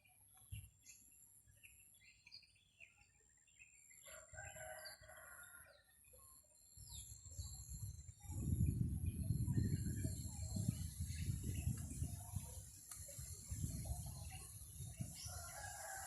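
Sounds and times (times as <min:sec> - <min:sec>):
small birds chirping: 0:00.0 - 0:16.0
rooster crowing: 0:04.1 - 0:05.7, 0:15.3 - 0:16.0
wind buffeting microphone: 0:06.8 - 0:16.0.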